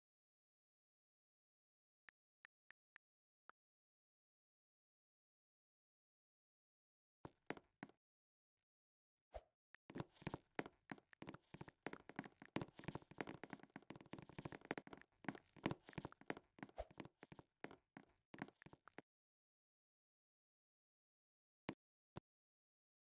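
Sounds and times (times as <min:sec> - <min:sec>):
quick irregular taps and knocks: 0:09.9 - 0:19.0.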